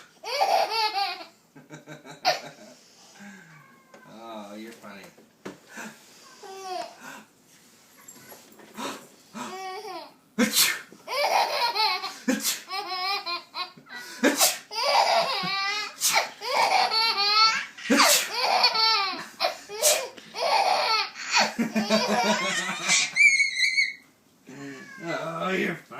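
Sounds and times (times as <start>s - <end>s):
child belly laughing: 0.2s - 2.8s, 11.1s - 24.0s
man fake sneezing: 10.4s - 11.0s, 12.3s - 12.7s, 14.2s - 14.7s, 16.0s - 16.3s, 17.9s - 18.4s, 19.8s - 20.2s.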